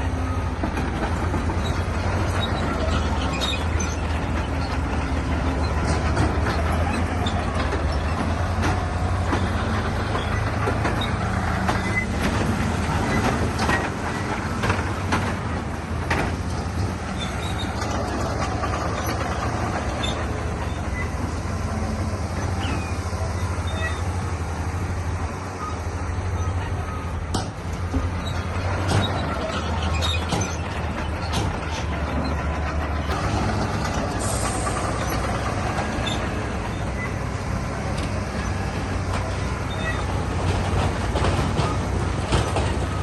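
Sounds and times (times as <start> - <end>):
diesel engine under load: 0.0 - 43.0
rock and metal clanking: 25.6 - 43.0.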